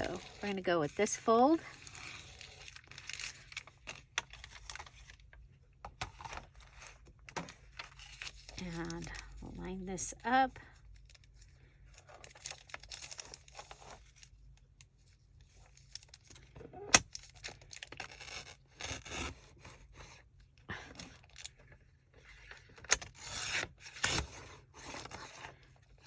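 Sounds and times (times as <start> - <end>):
paper rustling and creasing: 0.0 - 26.0.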